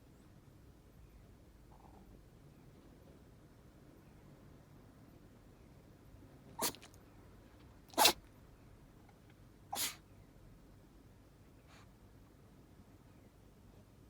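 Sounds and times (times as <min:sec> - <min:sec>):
dog sneezing: 0:06.6 - 0:06.9, 0:07.9 - 0:08.2, 0:09.7 - 0:10.0.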